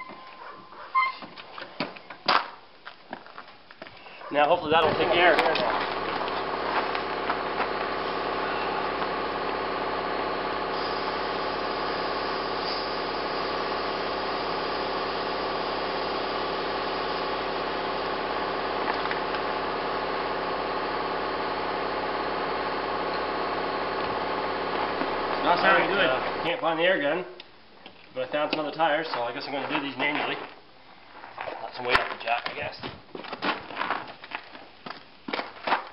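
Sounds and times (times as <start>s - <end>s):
air compressor running: 4.4s - 27.0s.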